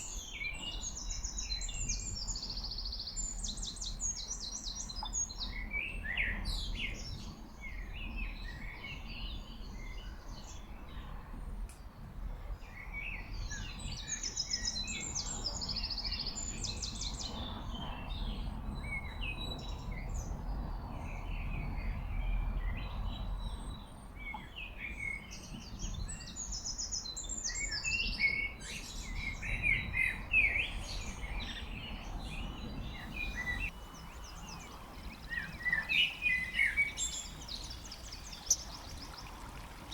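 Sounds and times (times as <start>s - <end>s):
small birds chirping: 24.3s - 39.9s
mountain stream rushing: 34.6s - 39.9s.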